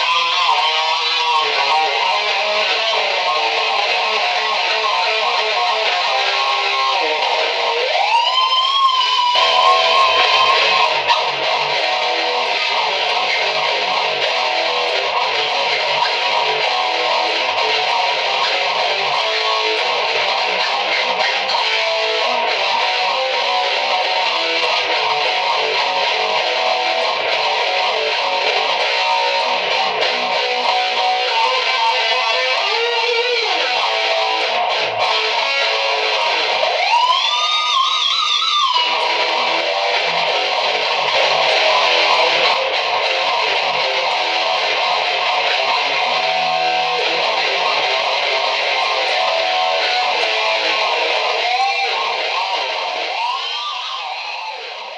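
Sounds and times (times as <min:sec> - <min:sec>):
loud electric guitar riffing: 0:00.0 - 0:54.9
squealing guitar note bending: 0:03.6 - 0:22.8.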